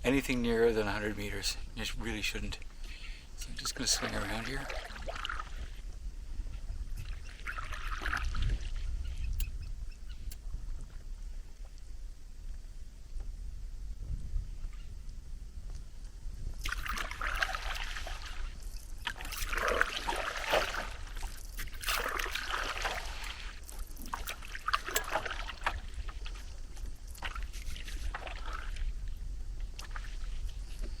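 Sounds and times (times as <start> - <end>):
paddle splashing through water: 3.8 - 5.8, 7.0 - 8.9, 16.6 - 30.9.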